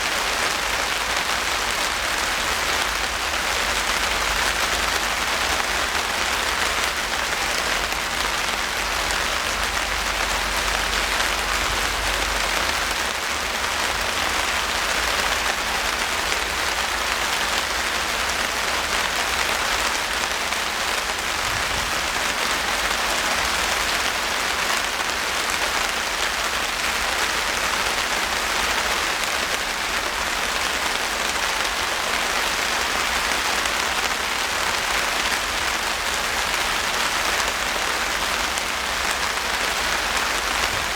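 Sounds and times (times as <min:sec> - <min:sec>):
rain falling steadily: 0:00.0 - 0:40.9.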